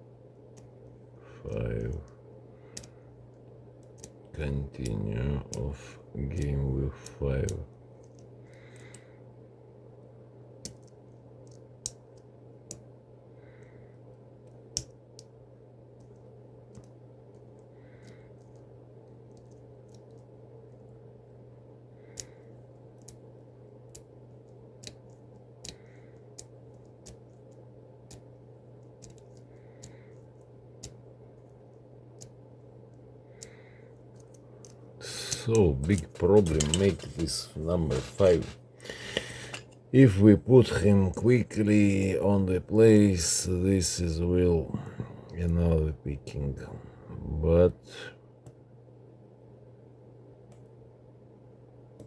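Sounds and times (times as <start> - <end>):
steady low hum: 0.0 - 52.0.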